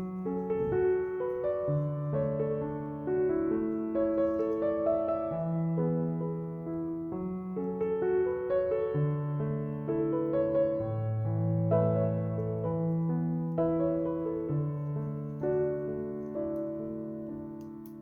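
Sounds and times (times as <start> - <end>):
soft slow piano music: 0.0 - 18.0.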